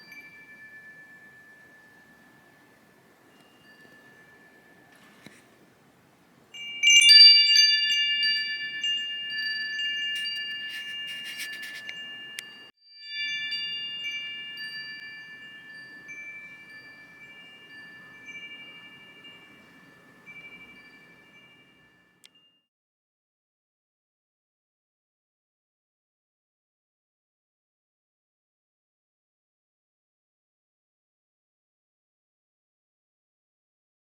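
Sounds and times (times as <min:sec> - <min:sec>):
metal tube wind chime ringing: 0:00.0 - 0:05.8, 0:06.4 - 0:22.6.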